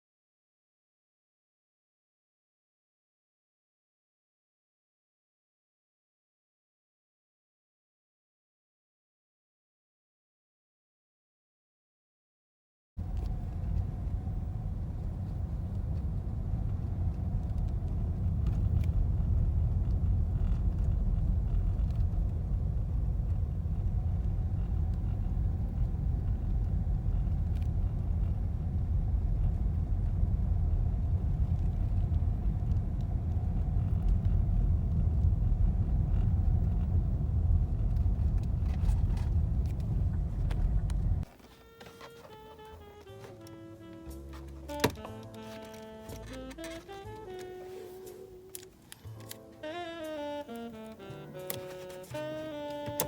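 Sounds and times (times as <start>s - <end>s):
car cabin road rumble: 13.0s - 49.3s, 50.1s - 53.0s
faint steady hum: 13.0s - 53.0s.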